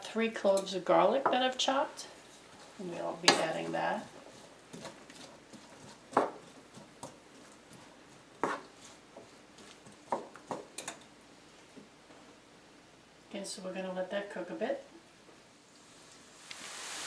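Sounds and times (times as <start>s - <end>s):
utensil scraping frying pan: 2.2s - 9.7s.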